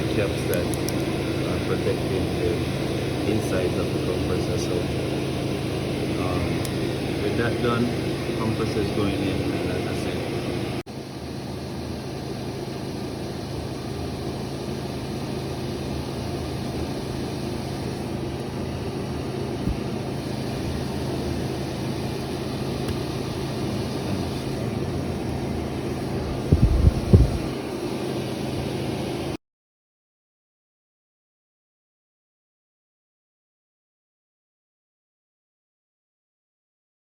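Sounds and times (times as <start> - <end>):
low mechanical drone: 0.0 - 29.4.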